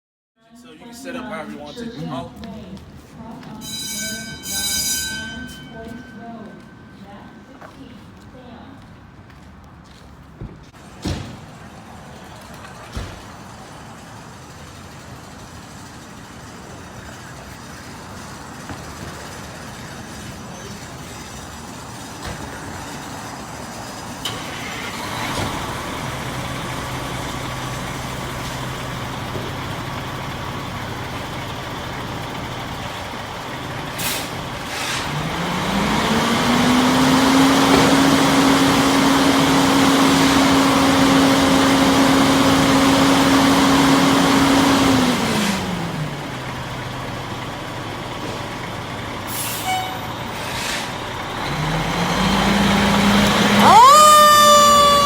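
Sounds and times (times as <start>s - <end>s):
diesel engine running: 11.5s - 55.0s
air brakes hissing: 33.9s - 35.2s, 49.2s - 51.1s.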